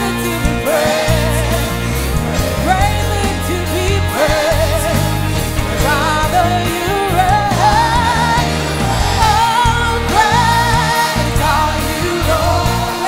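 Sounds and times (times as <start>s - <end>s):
band playing gospel music: 0.0s - 13.0s
person singing with vibrato: 0.0s - 13.0s
steady low bass: 0.0s - 13.0s.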